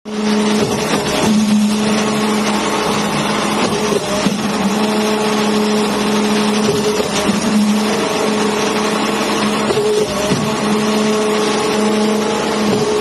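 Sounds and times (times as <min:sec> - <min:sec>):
concrete mixer pump drone: 0:00.1 - 0:13.0.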